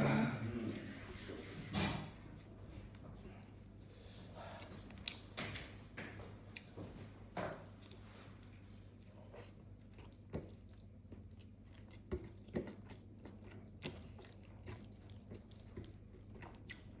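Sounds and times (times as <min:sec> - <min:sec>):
low steady hum: 0:00.0 - 0:17.0
chewing and mouth smacks: 0:04.6 - 0:17.0.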